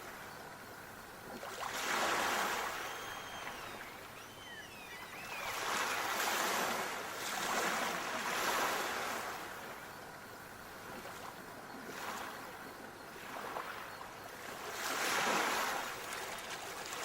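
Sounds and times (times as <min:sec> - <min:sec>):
sea waves washing in: 0:01.4 - 0:04.2, 0:05.2 - 0:09.7, 0:13.2 - 0:17.0
faint high chirps: 0:02.6 - 0:06.1.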